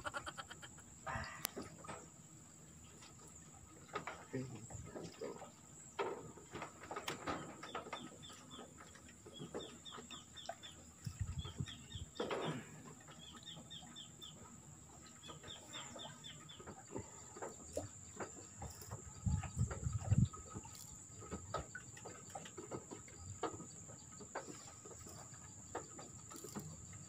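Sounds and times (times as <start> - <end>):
bird chirping: 13.2 - 22.5.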